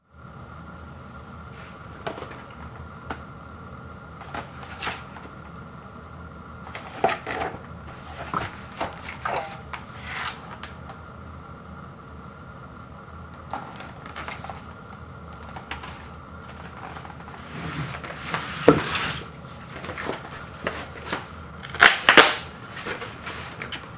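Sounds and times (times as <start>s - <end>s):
faint electrical hum: 0.0s - 23.9s
cardboard box handled and opened: 15.8s - 21.3s.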